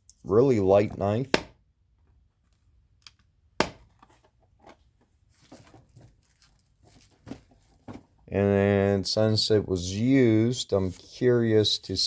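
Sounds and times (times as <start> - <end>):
faint rustling: 4.1 - 8.3.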